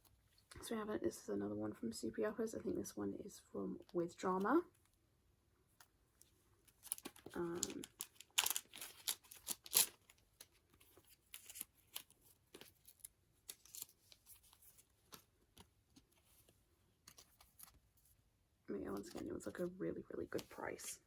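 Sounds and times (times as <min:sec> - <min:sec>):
plastic packaging crinkling: 0:06.7 - 0:15.2.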